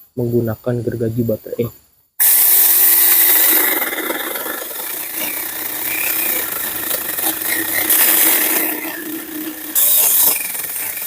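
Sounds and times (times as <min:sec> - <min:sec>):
electric chainsaw cutting wood: 0:02.2 - 0:11.0.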